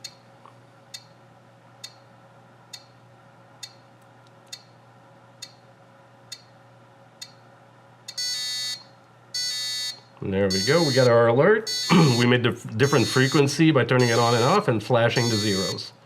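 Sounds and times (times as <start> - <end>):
buzzer ticks: 8.1 - 14.6, 15.2 - 15.8.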